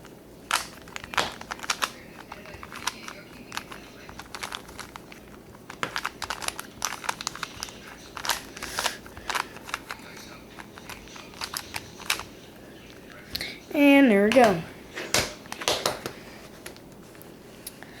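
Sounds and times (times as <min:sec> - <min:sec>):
plastic puzzle cube clicking: 0:00.5 - 0:12.3.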